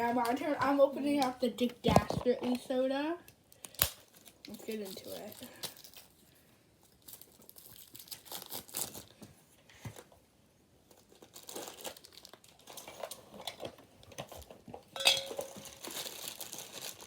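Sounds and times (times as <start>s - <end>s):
plastic packaging crinkling: 3.5s - 9.2s, 10.9s - 17.0s.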